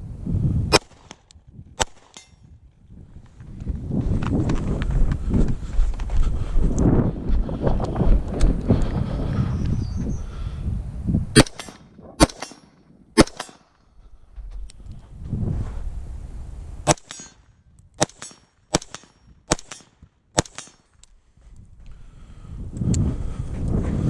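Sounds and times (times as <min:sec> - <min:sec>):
gunshots with short echo: 0:11.4 - 0:13.7, 0:16.8 - 0:17.4, 0:18.0 - 0:20.9.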